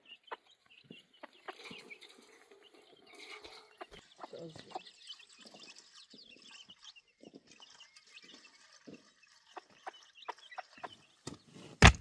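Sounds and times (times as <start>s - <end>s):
faint birds chirping: 0.0s - 11.9s.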